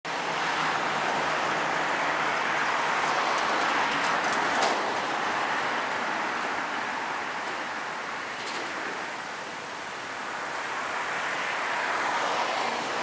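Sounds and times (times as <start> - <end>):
train rushing: 0.4 - 9.7.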